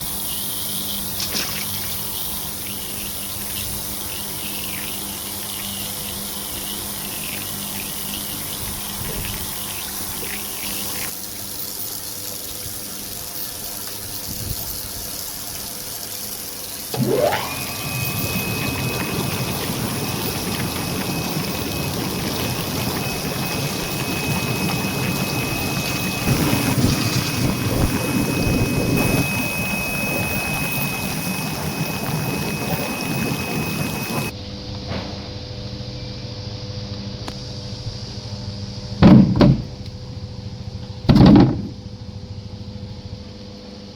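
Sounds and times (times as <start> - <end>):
water flowing and splashing: 0.0 - 34.3
motor whine: 0.0 - 43.9.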